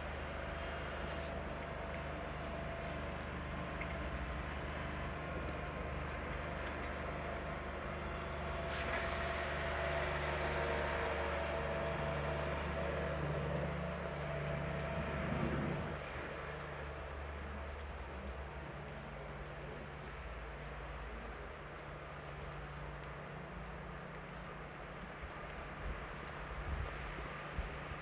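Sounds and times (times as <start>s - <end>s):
steady low city hum: 0.0s - 28.0s
motor vehicle passing: 8.6s - 16.7s.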